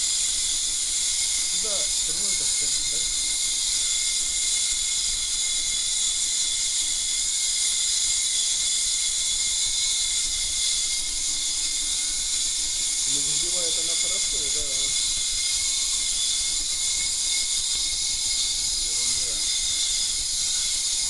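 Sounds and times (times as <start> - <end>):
high-pitched ultrasonic cavitation hiss: 0.0 - 21.0
thin constant tone: 0.0 - 21.0.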